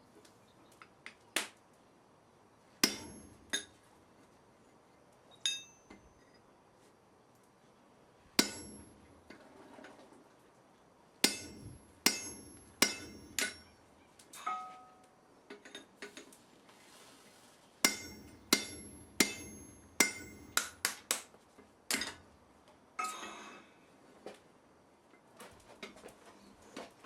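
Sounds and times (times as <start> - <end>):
hammer striking metal on anvil: 2.8 - 3.7, 8.4 - 9.1, 11.2 - 13.8, 17.8 - 21.0.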